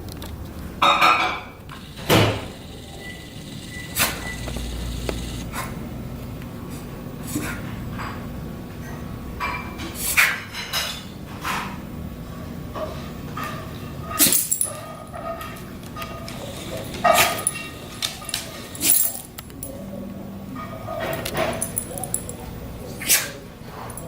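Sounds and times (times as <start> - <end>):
dog sneezing: 23.0 - 23.4.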